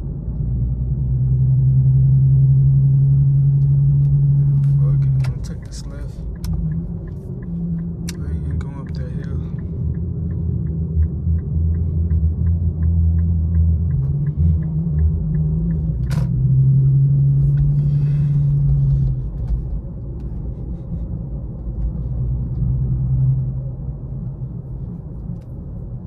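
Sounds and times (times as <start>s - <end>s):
car engine running: 0.0s - 26.0s
turn signal ticking: 4.8s - 20.5s.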